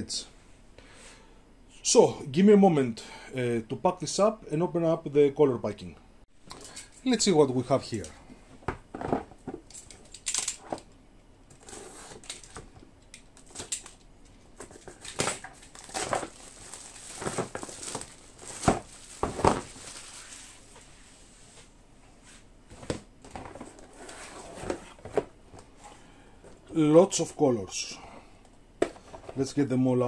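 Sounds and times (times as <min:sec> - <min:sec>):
cardboard and plastic rustling: 0:07.8 - 0:10.9, 0:11.5 - 0:21.7, 0:22.7 - 0:26.9.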